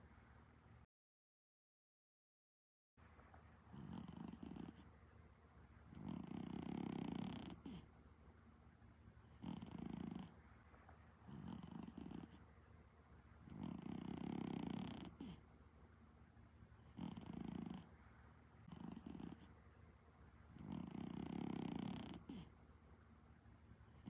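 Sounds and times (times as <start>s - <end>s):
cat snoring: 3.7s - 4.9s, 5.9s - 7.9s, 9.3s - 10.4s, 11.3s - 12.5s, 13.4s - 15.4s, 16.8s - 17.9s, 18.6s - 19.5s, 20.6s - 22.6s.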